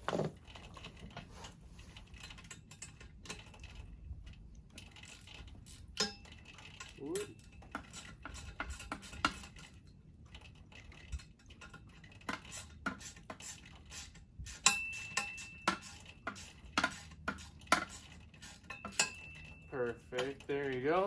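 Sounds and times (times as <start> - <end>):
metal tools and bolts clinking: 4.8 - 9.8, 10.7 - 21.0.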